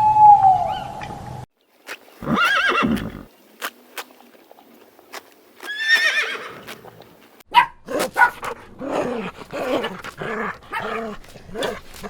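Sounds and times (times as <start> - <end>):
horse whinnying: 2.2 - 3.3, 5.7 - 6.6
dog barking and yelping: 7.5 - 12.0.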